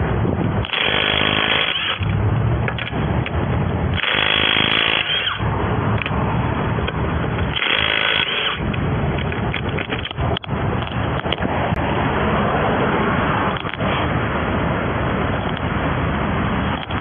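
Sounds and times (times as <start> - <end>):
background rumble: 0.0 - 17.0
impact wrench running: 0.6 - 2.2, 3.9 - 5.4, 7.4 - 8.6.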